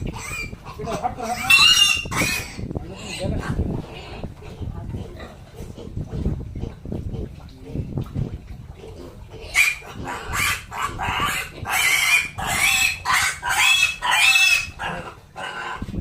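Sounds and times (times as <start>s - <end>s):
pig squealing: 0.0s - 4.3s, 9.4s - 16.0s.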